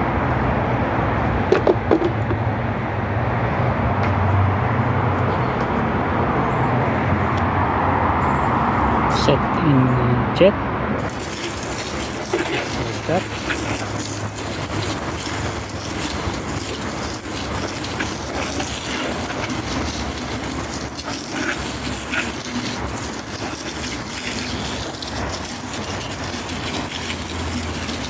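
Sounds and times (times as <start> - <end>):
hose spraying water jet: 11.0 - 28.0.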